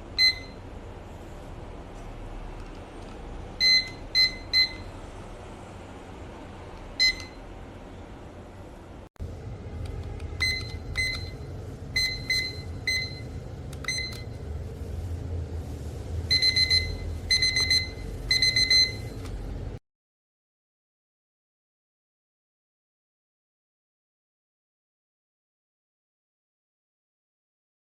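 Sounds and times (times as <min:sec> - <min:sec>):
kitchen timer beeping: 0:00.2 - 0:00.6, 0:03.6 - 0:05.0, 0:07.0 - 0:07.5, 0:10.3 - 0:14.5, 0:16.3 - 0:19.4
low rumble: 0:09.2 - 0:19.8.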